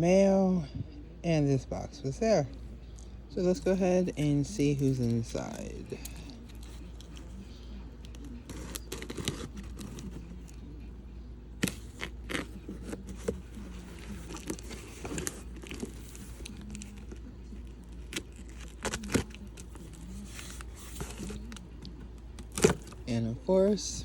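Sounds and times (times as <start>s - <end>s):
cardboard tearing and crinkling: 8.4s - 10.4s, 11.6s - 21.7s, 22.4s - 23.0s.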